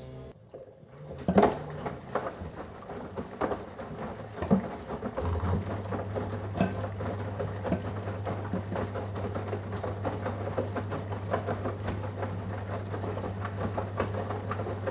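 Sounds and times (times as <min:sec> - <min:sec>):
washing machine motor hum: 0:00.0 - 0:14.9.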